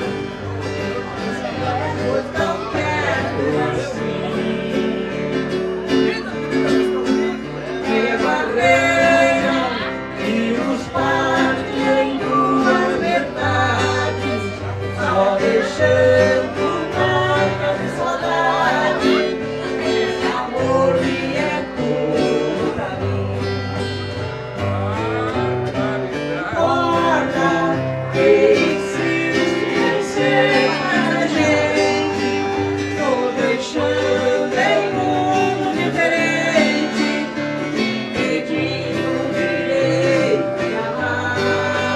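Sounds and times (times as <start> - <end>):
guitar strummed and picked: 0.0 - 41.9
person singing: 7.6 - 24.1, 24.8 - 41.9.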